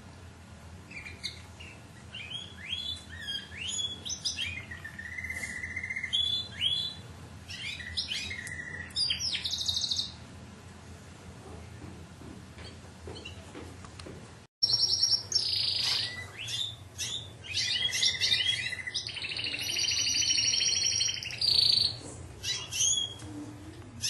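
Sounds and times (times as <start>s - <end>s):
canary singing: 0.9s - 10.2s, 14.6s - 23.3s.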